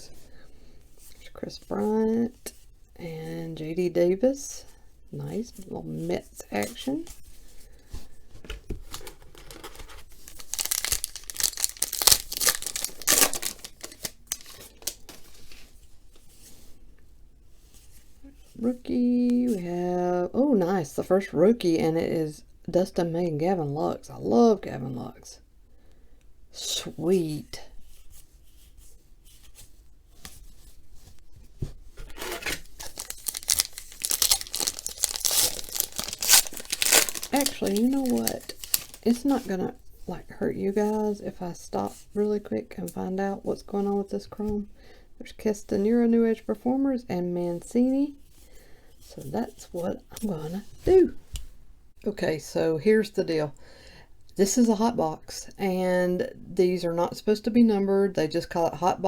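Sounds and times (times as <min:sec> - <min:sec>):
wrapper tearing and crinkling: 0:08.8 - 0:15.6, 0:32.0 - 0:39.5.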